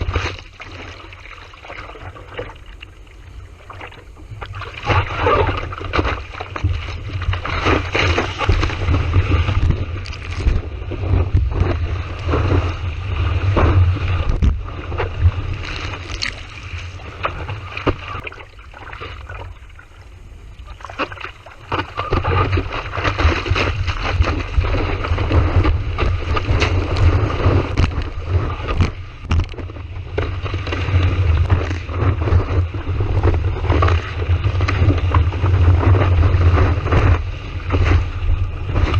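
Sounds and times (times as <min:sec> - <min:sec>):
wind buffeting microphone: 0:03.3 - 0:18.2.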